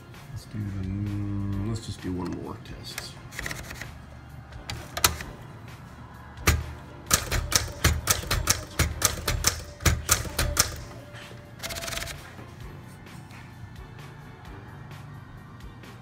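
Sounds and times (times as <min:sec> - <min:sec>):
manual typewriter keystrokes: 0:03.3 - 0:03.9, 0:04.7 - 0:05.4, 0:06.4 - 0:11.0, 0:11.6 - 0:12.2.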